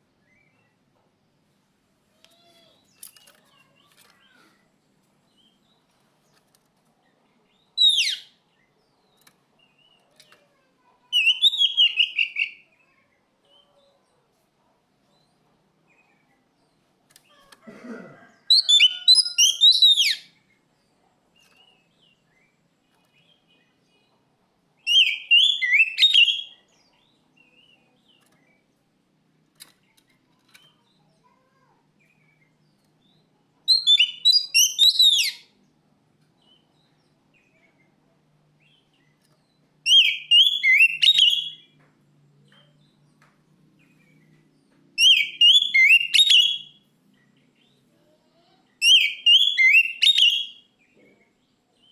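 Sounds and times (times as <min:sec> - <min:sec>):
bird singing whistled notes: 0:07.8 - 0:08.4, 0:11.2 - 0:12.8, 0:18.6 - 0:20.3, 0:24.8 - 0:26.7, 0:33.7 - 0:35.5, 0:39.9 - 0:41.7, 0:45.0 - 0:46.8, 0:48.8 - 0:50.7.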